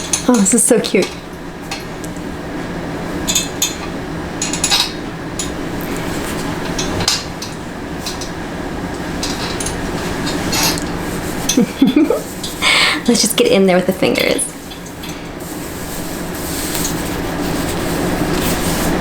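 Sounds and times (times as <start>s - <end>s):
steady low hum: 0.0s - 19.0s
hairbrush swishing through hair: 15.4s - 19.0s.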